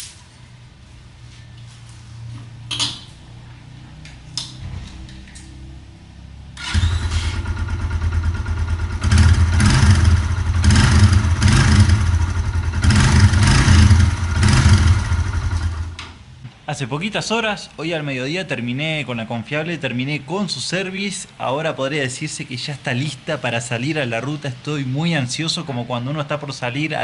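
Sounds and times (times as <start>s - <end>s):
motorcycle engine revving: 4.6s - 16.0s.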